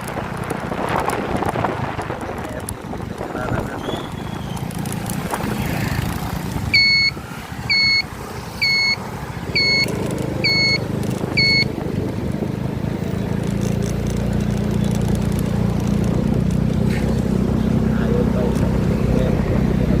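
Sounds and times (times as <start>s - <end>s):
engine running: 0.0s - 20.0s
short high-pitched beeps: 6.7s - 9.0s, 9.6s - 11.7s.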